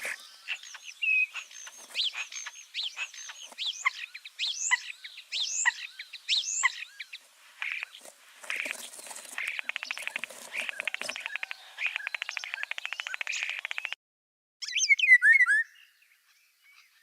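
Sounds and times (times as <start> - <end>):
birds singing whistled phrases: 0.1 - 8.0, 9.4 - 14.0, 14.6 - 17.0
bird fast trill: 9.4 - 14.0.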